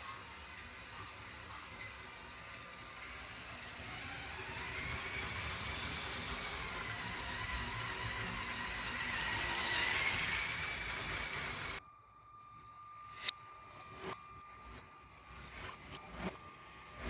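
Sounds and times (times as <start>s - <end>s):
wheels rushing on track: 0.0s - 11.8s
toy train motor whine: 0.0s - 17.0s.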